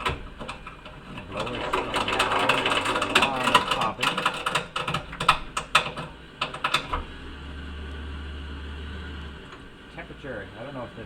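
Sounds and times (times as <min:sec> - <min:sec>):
water heater popping: 0:00.0 - 0:07.1
combustion blower running: 0:00.0 - 0:11.0.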